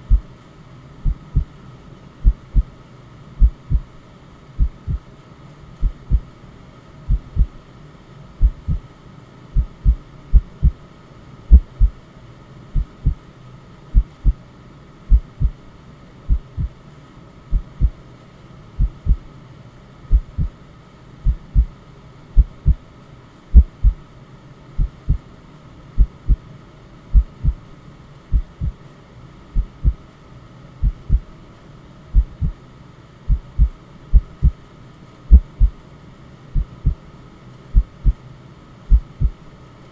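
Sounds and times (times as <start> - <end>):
faint steady hum: 0.0 - 39.9
heartbeat double thump: 3.4 - 3.9, 4.6 - 5.0, 5.8 - 6.2, 7.1 - 7.5, 8.4 - 8.8, 9.6 - 10.8, 11.5 - 12.0, 15.1 - 15.6, 16.3 - 16.7, 20.1 - 20.5, 21.3 - 21.7, 23.6 - 24.0, 27.2 - 27.6, 28.3 - 28.8, 29.6 - 30.0, 30.8 - 31.2, 32.2 - 32.6, 33.3 - 34.6, 35.3 - 35.8, 38.9 - 39.4.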